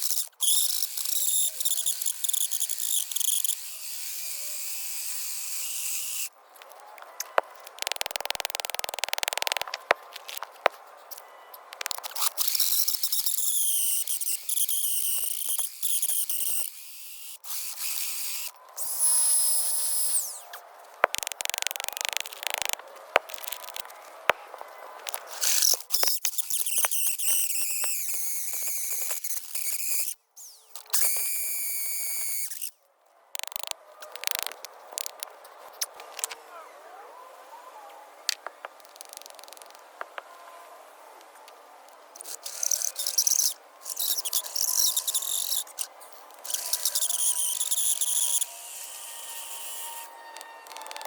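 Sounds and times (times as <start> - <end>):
power drill boring into concrete: 46.4 - 50.1.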